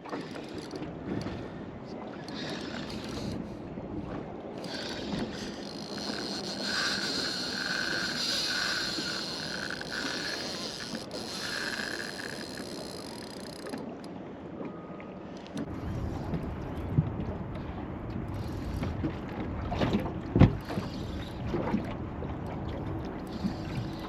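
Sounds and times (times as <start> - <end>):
water noise: 0.0 - 24.0
wind: 0.0 - 24.0
fishing reel winding: 4.6 - 13.8.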